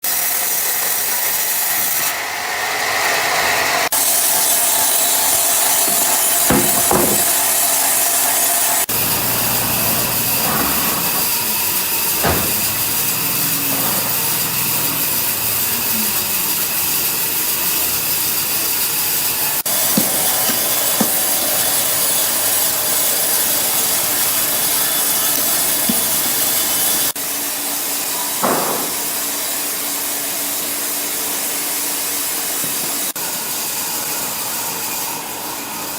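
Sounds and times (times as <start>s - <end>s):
saw cutting through log: 0.0s - 28.1s
wood knocks: 5.9s - 7.4s, 12.2s - 14.1s, 28.4s - 29.0s.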